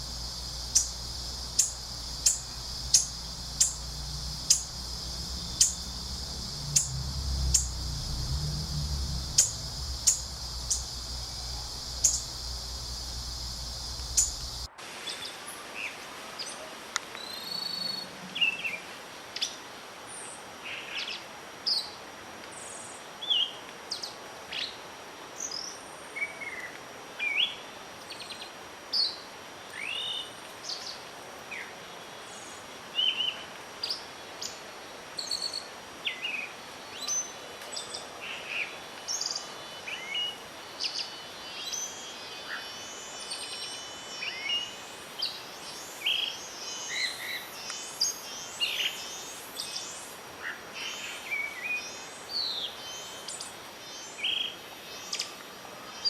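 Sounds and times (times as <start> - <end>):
low rumble: 0.0 - 14.7
wild birds singing: 0.0 - 14.7
high steady hiss: 0.0 - 56.0.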